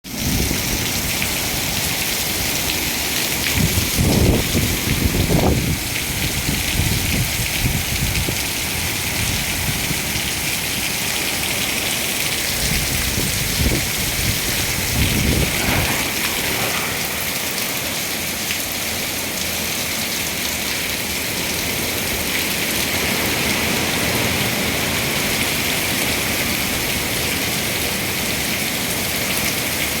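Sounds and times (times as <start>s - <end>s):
heavy rain hissing: 0.1s - 30.0s
low rumbles: 12.2s - 19.0s.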